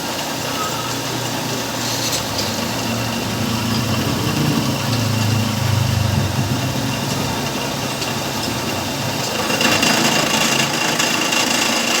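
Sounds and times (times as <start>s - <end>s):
motor running steadily: 0.0s - 12.0s
harsh high-pitched whining noise: 0.4s - 11.4s.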